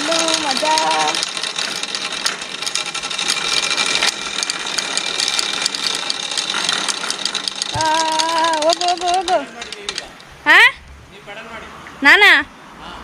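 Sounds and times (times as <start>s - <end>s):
chain and wheels clicking and rattling: 0.0s - 10.4s.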